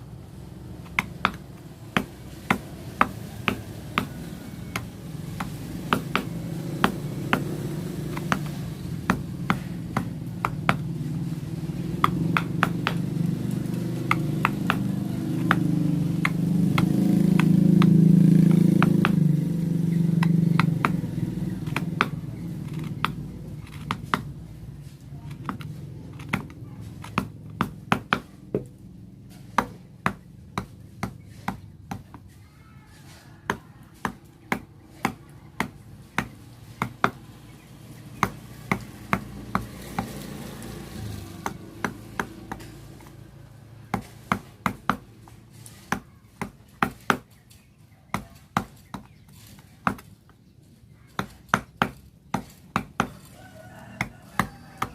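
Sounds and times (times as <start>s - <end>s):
mallet striking chisel into wood: 0.8s - 10.9s, 12.0s - 17.9s, 21.6s - 24.3s, 25.3s - 28.8s, 29.5s - 32.2s, 43.9s - 45.1s, 45.8s - 47.4s, 51.1s - 53.2s.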